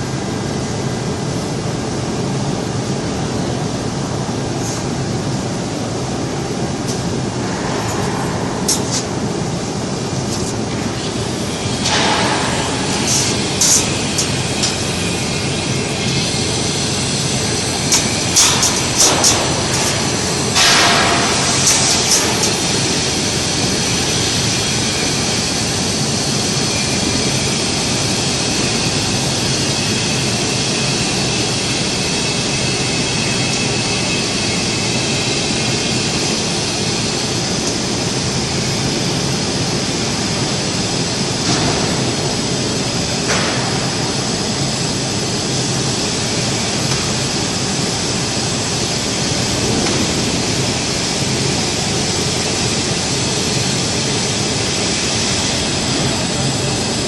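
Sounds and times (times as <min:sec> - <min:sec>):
welding arc hissing: 0:07.0 - 0:57.0.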